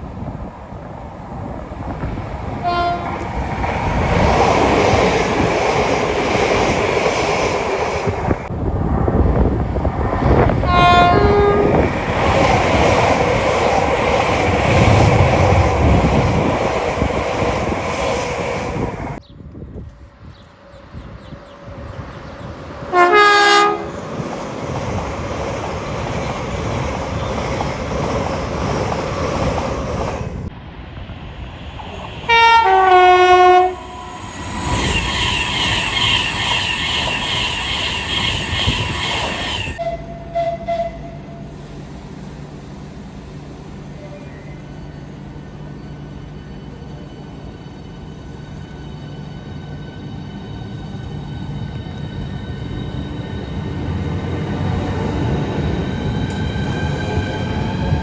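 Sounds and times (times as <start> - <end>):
train passing: 0.0 - 58.0
train two-tone horn: 2.6 - 3.3, 10.6 - 11.9, 22.9 - 24.0, 32.3 - 34.3, 35.0 - 41.6.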